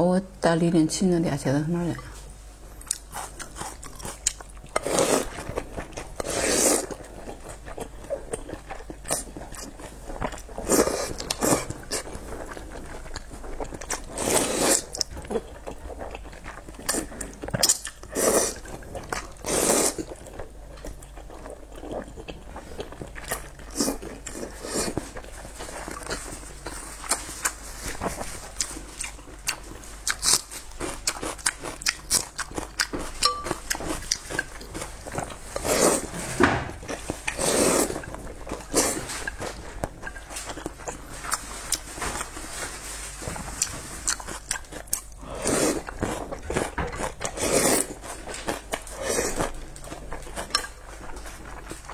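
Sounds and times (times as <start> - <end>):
person chewing food: 2.0 - 51.9.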